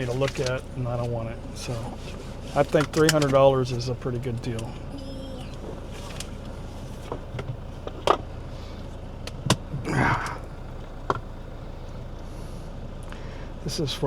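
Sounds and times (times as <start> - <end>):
rustle of things being handled: 0.0 - 8.0
steady low hum: 0.0 - 14.0.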